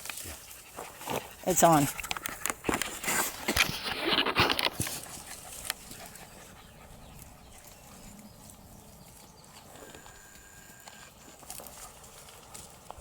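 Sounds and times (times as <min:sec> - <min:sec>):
faint puppy sounds: 0:04.9 - 0:10.8.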